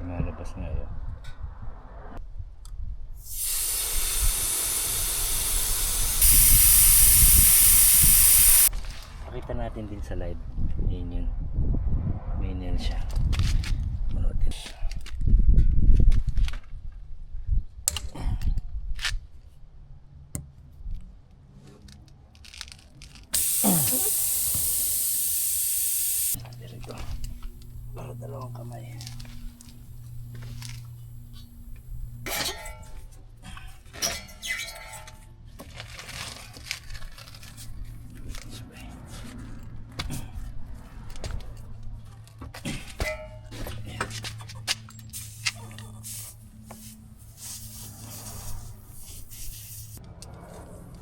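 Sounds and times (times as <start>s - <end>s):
air hissing from tyre: 3.2s - 8.7s, 23.4s - 26.4s, 27.2s - 32.3s, 45.2s - 50.0s.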